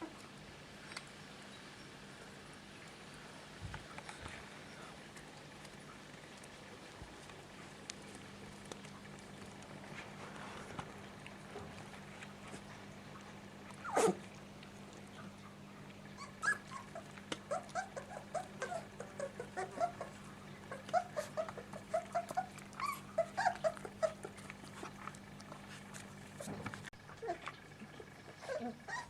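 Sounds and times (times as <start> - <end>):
puppies whimpering and yipping: 13.7 - 14.3, 16.0 - 25.0, 27.1 - 29.0
puppy yelp: 13.8 - 14.2, 16.2 - 24.4, 28.3 - 29.0.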